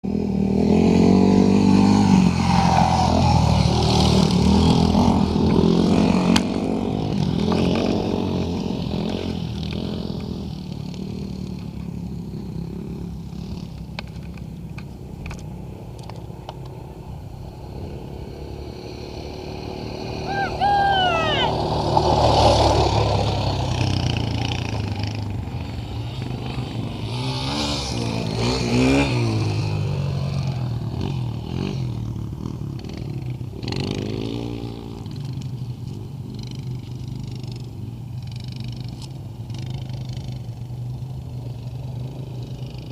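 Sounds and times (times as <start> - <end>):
dirt bike engine revving: 0.1 - 13.8, 17.6 - 35.4.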